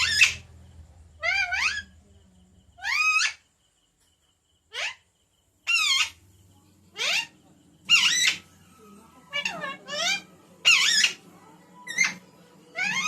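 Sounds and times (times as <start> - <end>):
parakeet high-pitched calls: 0.0 - 0.6, 1.2 - 2.0, 2.8 - 3.4, 4.7 - 5.0, 5.6 - 6.2, 6.9 - 13.0.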